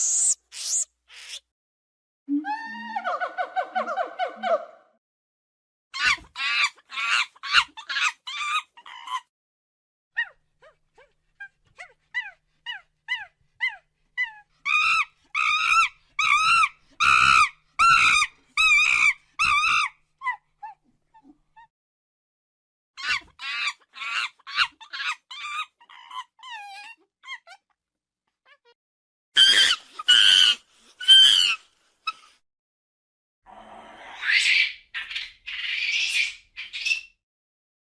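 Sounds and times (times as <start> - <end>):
monkey screeching calls: 0.0 - 1.4, 14.7 - 19.9, 29.4 - 31.6.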